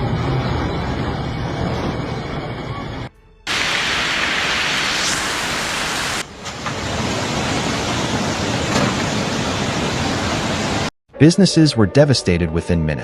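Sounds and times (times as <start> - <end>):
flowing floodwater: 3.5 - 10.9
heavy rain: 3.5 - 10.9.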